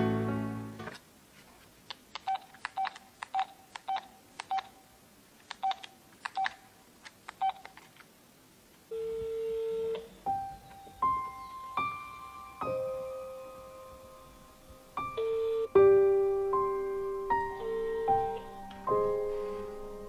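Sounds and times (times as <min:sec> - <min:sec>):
soft piano music: 0:00.0 - 0:01.0, 0:10.0 - 0:20.0
steady phone line tone: 0:08.9 - 0:10.2, 0:15.0 - 0:16.0, 0:16.9 - 0:18.9
touch-tone keypad beeps: 0:15.1 - 0:15.7, 0:17.5 - 0:18.5.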